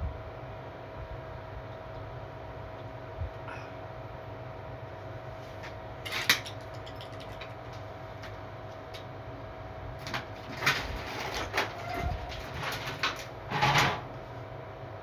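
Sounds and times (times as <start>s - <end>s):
steady low hum: 0.0s - 15.0s
metallic clanks and rattles: 10.0s - 14.2s.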